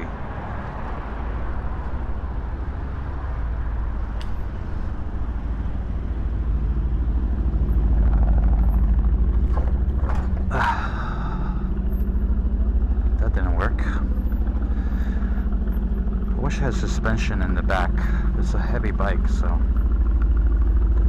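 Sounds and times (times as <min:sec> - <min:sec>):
bike clattering over bump: 0:08.0 - 0:12.1.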